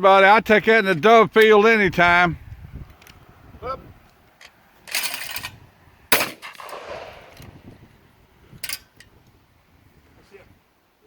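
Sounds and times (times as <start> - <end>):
shotgun shot: 6.1 - 7.4.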